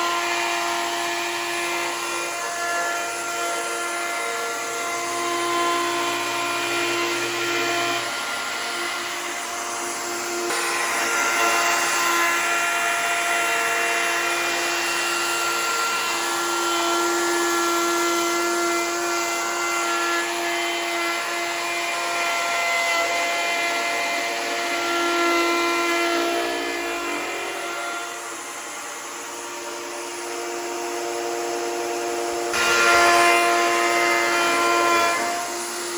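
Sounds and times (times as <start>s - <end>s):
power tool whining on wood: 0.0s - 35.9s.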